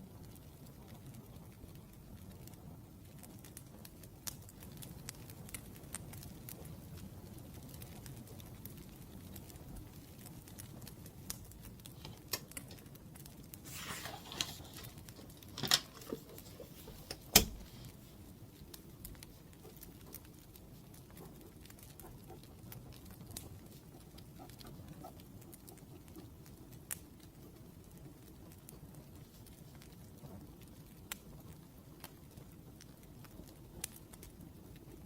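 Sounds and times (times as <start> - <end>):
wood fire crackling: 0.0 - 35.0
scratchy rustle: 13.5 - 25.8.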